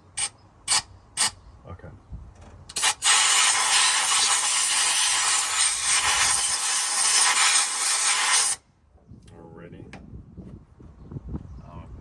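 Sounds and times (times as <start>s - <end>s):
compressed air blowgun hissing: 0.2s - 1.4s, 2.7s - 8.6s.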